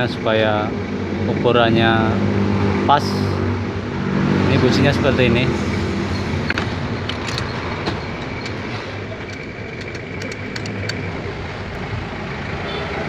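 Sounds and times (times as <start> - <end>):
road traffic rumble: 0.0 - 13.0
hand tools clicking: 6.5 - 11.1.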